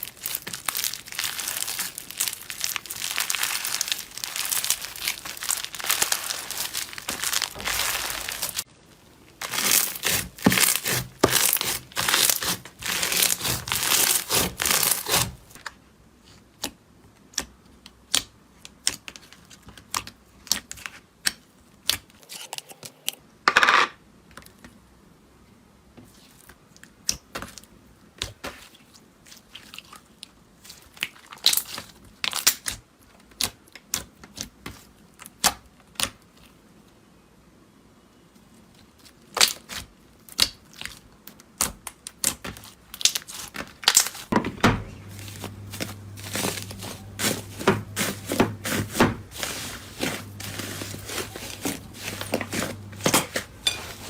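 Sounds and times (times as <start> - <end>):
slime crackling by hand: 0.0 - 15.6, 45.0 - 54.0.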